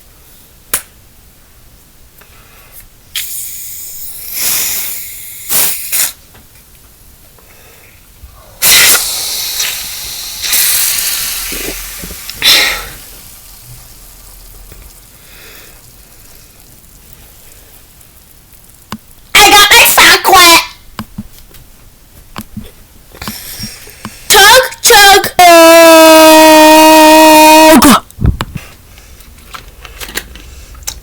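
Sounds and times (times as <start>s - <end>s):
soda fizzing and hissing: 3.0s - 6.3s, 7.6s - 19.4s, 20.8s - 24.4s.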